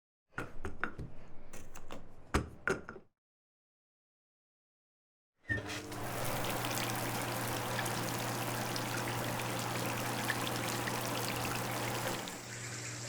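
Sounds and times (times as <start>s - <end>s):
shower spray splashing: 5.8s - 13.0s
water drips: 6.0s - 12.7s.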